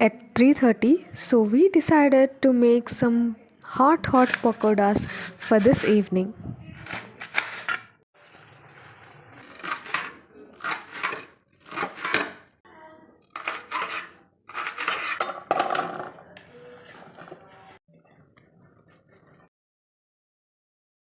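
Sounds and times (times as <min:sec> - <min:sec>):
utensils clattering against dishes: 0:13.3 - 0:16.3, 0:16.9 - 0:19.5.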